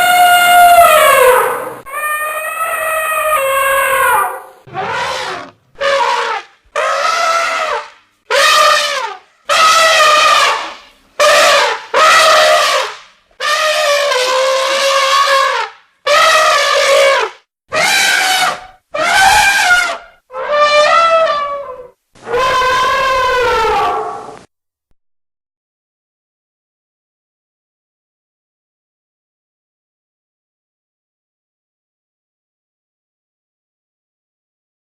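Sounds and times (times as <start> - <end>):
elephant trumpeting: 0.0 - 24.4.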